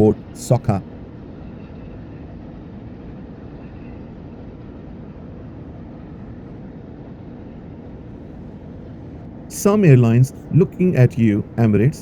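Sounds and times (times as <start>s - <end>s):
airport background rumble: 0.0s - 1.4s, 4.8s - 12.0s.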